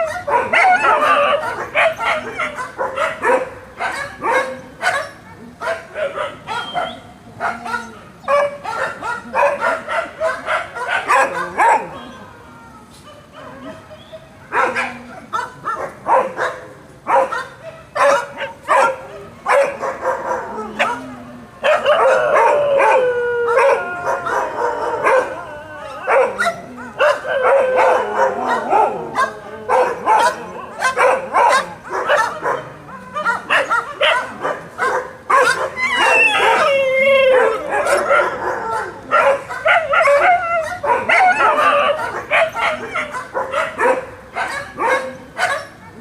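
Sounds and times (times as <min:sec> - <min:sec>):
dogs barking: 0:00.0 - 0:12.2, 0:13.1 - 0:46.0
dogs howling: 0:00.0 - 0:16.5, 0:17.2 - 0:46.0.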